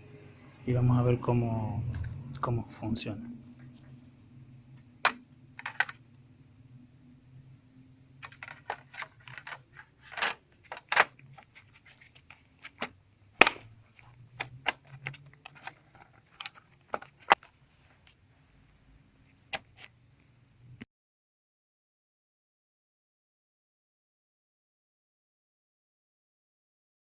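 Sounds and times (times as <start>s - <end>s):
faint low hum: 0.0s - 20.8s
plastic clicks and knocks: 5.0s - 6.0s.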